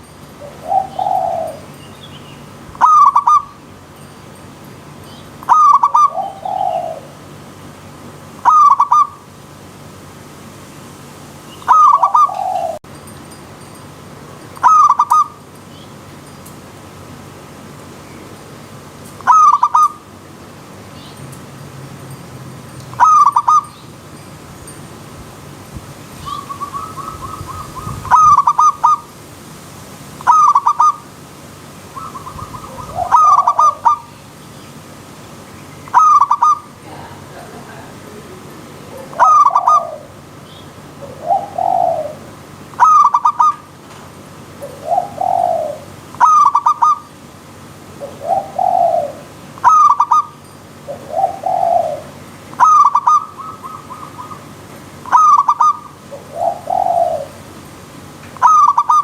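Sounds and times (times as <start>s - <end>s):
dove cooing call: 0.0s - 3.8s, 5.4s - 9.6s, 11.6s - 12.9s, 14.6s - 15.4s, 19.2s - 20.2s, 22.9s - 24.0s, 26.1s - 29.2s, 30.2s - 31.2s, 31.8s - 34.4s, 35.4s - 57.6s, 58.3s - 59.0s
low swooping coos: 31.9s - 34.2s, 35.9s - 43.7s.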